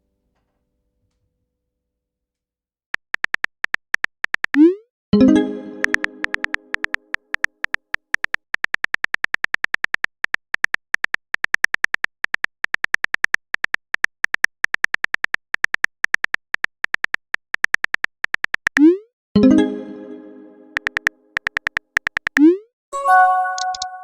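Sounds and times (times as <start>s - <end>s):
keyboard typing clicks: 3.0s - 19.0s, 20.7s - 22.6s, 23.3s - 24.0s.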